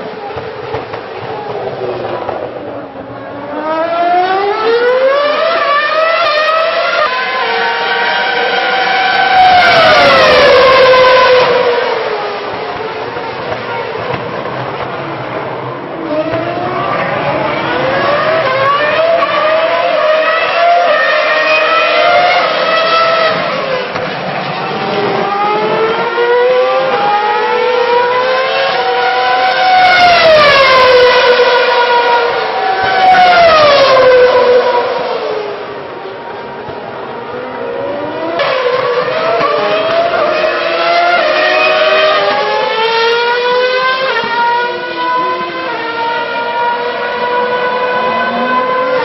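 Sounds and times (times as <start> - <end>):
racing car engine at high revs: 0.0 - 49.0.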